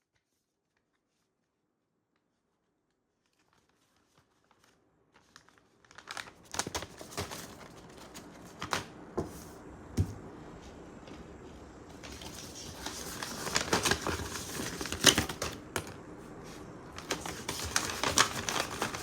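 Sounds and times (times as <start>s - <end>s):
plastic packaging crinkling and tearing: 3.2s - 8.9s, 11.9s - 16.0s, 16.9s - 19.0s.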